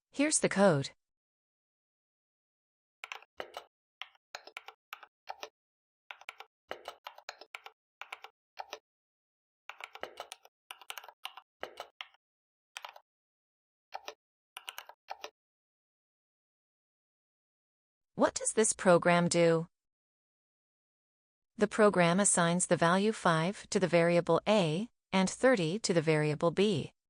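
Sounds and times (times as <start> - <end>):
computer keyboard typing: 3.0 - 5.5, 6.1 - 8.8, 9.7 - 12.2, 12.8 - 13.0, 14.0 - 15.3.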